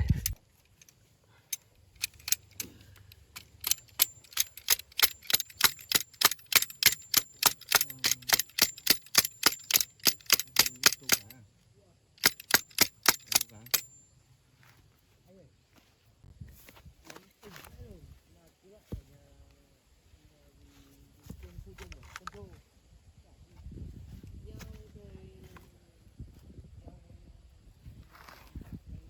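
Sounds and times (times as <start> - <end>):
tent stakes being hammered: 3.4 - 11.4, 12.2 - 14.0.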